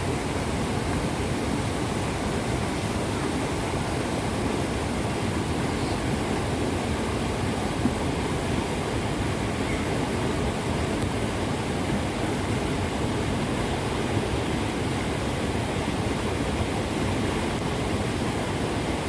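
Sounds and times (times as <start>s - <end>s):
river water rushing: 0.0s - 19.0s.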